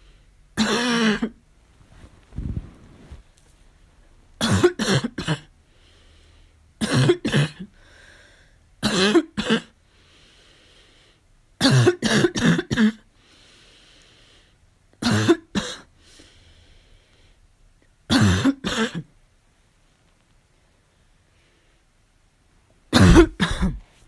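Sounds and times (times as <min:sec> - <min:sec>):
person coughing harshly: 0:00.6 - 0:01.4, 0:04.4 - 0:05.5, 0:06.8 - 0:07.7, 0:08.8 - 0:09.8, 0:11.6 - 0:13.0, 0:15.0 - 0:15.9, 0:18.1 - 0:19.1, 0:22.9 - 0:23.9.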